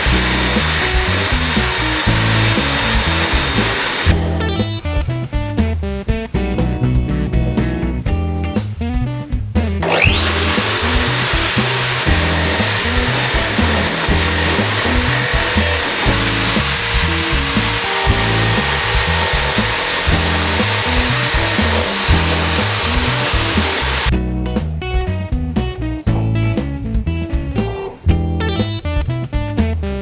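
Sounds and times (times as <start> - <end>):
electric drill motor whine: 0.0 - 4.1, 9.8 - 24.1
tool scraping turning wood: 0.0 - 4.3, 9.8 - 24.1
guitar music: 0.0 - 30.0.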